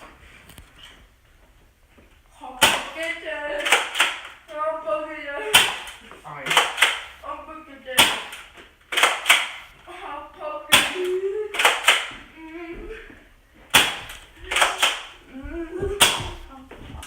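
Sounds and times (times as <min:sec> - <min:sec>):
toy dart blasters firing: 0:07.9 - 0:09.7, 0:10.7 - 0:12.2, 0:13.7 - 0:15.2.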